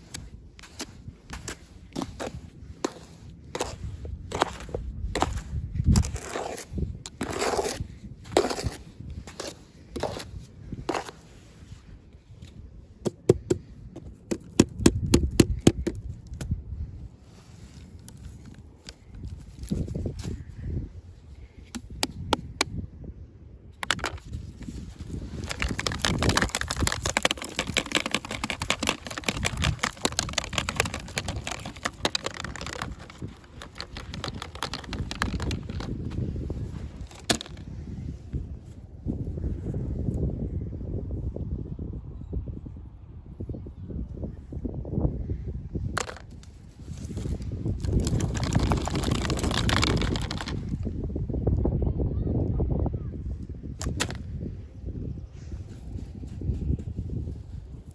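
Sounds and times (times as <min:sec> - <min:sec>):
packaging rustling: 0:23.9 - 0:36.1, 0:47.1 - 0:50.7.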